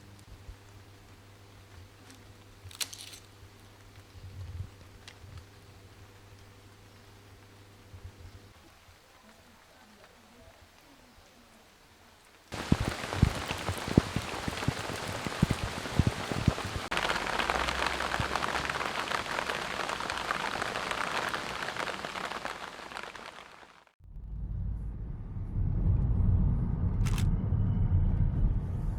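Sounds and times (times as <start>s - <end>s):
rain pattering: 0.0s - 24.0s
heavy raindrops tapping: 12.5s - 24.0s.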